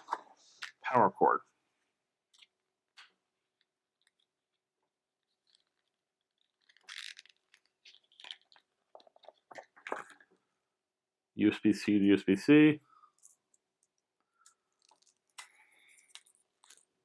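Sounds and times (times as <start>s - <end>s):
packaging crinkling: 5.3s - 10.3s, 14.7s - 17.0s.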